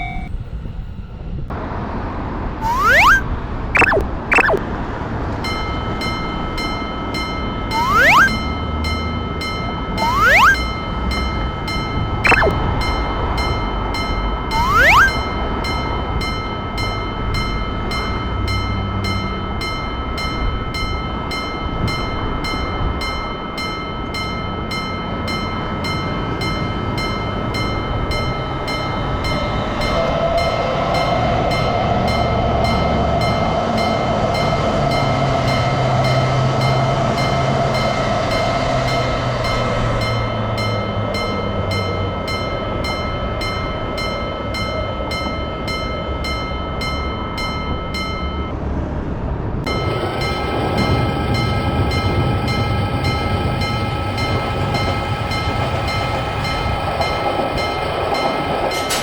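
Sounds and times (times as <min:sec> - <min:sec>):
level-crossing warning bell: 0:00.0 - 0:01.4, 0:05.3 - 0:48.8, 0:49.7 - 0:59.0
train running noise: 0:03.8 - 0:59.0
steady whine: 0:49.7 - 0:58.8.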